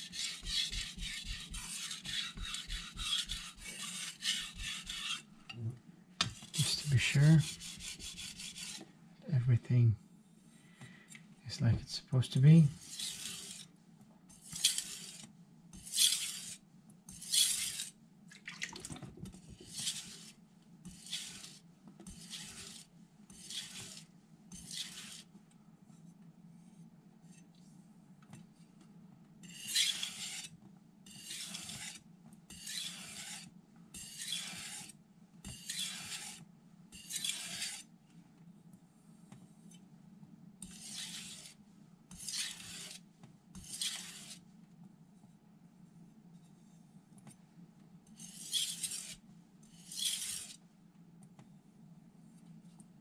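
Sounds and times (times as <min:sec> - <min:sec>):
knife scraping on whetstone: 0:00.0 - 0:05.4, 0:06.3 - 0:08.8, 0:12.8 - 0:13.7, 0:14.3 - 0:18.0, 0:19.6 - 0:25.3, 0:29.4 - 0:37.9, 0:40.6 - 0:44.4, 0:48.1 - 0:50.6.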